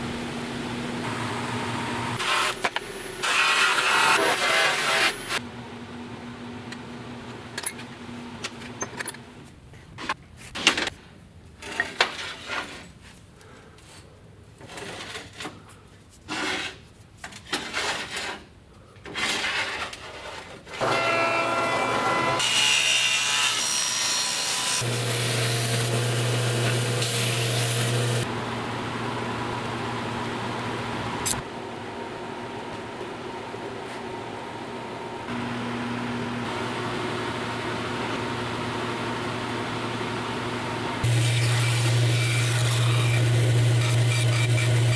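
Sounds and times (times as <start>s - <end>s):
power tool running: 0.0s - 5.4s, 20.8s - 28.4s, 36.4s - 44.9s.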